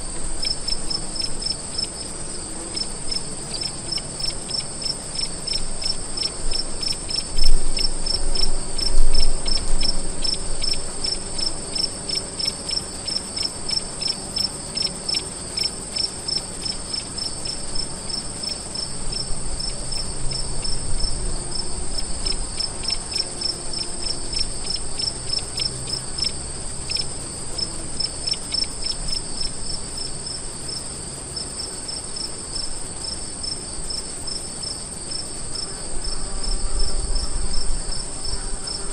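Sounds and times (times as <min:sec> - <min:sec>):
crickets chirping: 0:00.0 - 0:38.9.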